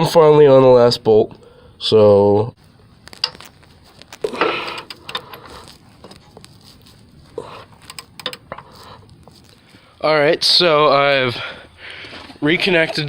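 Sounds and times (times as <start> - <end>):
metallic tool clicks and scraping: 7.8 - 8.8.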